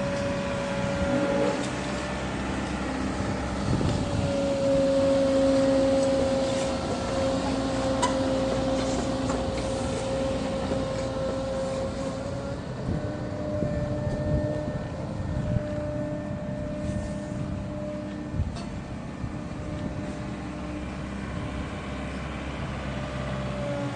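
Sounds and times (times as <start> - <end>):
excavator engine whining: 0.0 - 23.9.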